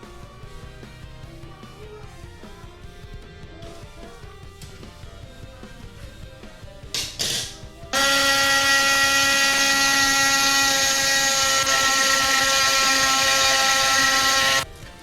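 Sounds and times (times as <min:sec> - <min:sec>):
oscillating tool cutting metal: 0:08.0 - 0:14.7.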